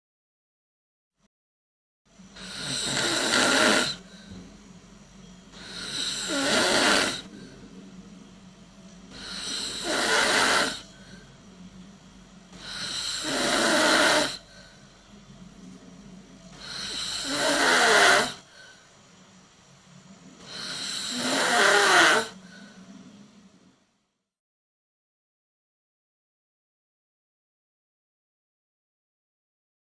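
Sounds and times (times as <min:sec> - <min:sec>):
person snoring: 0:02.4 - 0:04.3, 0:05.6 - 0:07.7, 0:09.1 - 0:11.4, 0:12.5 - 0:14.8, 0:16.5 - 0:18.8, 0:20.4 - 0:22.9.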